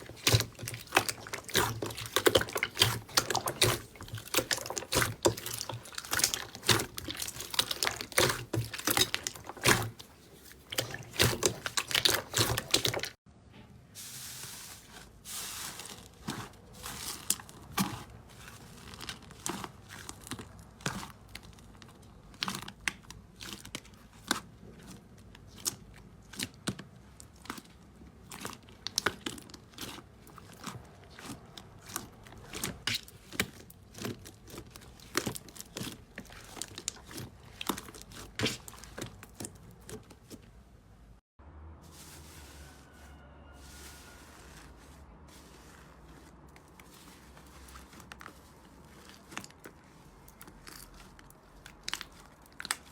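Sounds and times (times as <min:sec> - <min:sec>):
slime crackling and popping: 0:00.0 - 0:13.2, 0:48.0 - 0:52.9.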